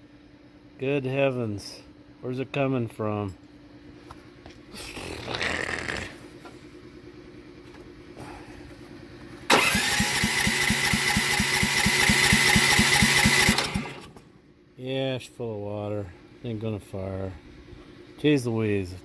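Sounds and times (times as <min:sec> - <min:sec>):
engine starter cranking: 0:09.5 - 0:14.2.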